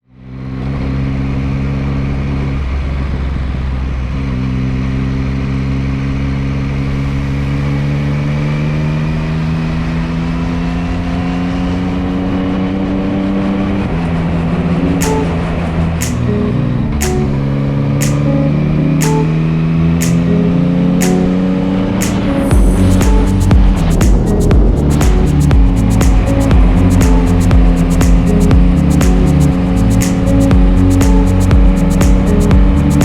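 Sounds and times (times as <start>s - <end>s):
wind rumble on microphone: 1.9s - 4.4s, 22.1s - 33.0s
sharp clicks: 16.0s - 16.4s, 17.0s - 17.3s, 18.0s - 18.3s, 20.0s - 20.4s, 21.0s - 21.4s, 22.0s - 22.3s, 22.9s - 33.0s
motorcycle engine running: 20.1s - 33.0s.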